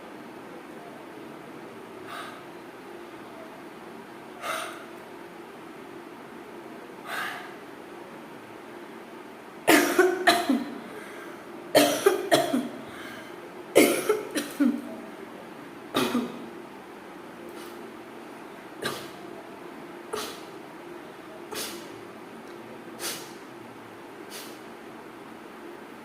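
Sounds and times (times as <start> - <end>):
person coughing: 9.7 - 10.8, 11.8 - 12.7, 13.8 - 14.9, 16.0 - 16.4, 18.8 - 19.2, 20.1 - 20.4.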